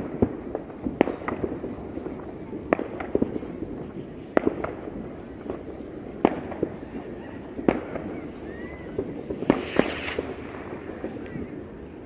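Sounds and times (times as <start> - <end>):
fireworks bangs: 8.9 - 12.0
fireworks crackle: 9.0 - 12.0.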